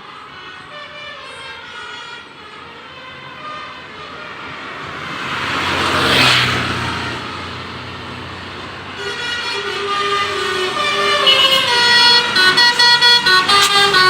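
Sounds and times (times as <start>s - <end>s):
multi-tone bus air horn: 0.0s - 4.7s, 8.8s - 14.0s
bus engine passing: 0.0s - 14.0s.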